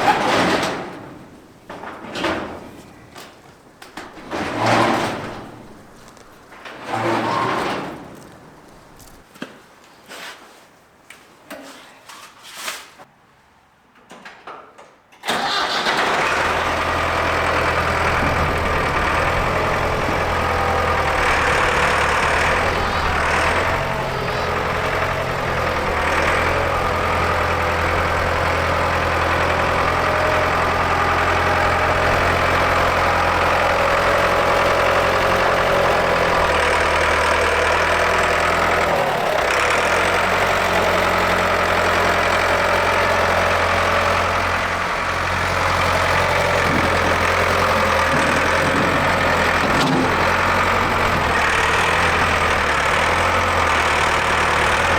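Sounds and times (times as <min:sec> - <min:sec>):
engine idling: 0:15.3 - 0:54.9.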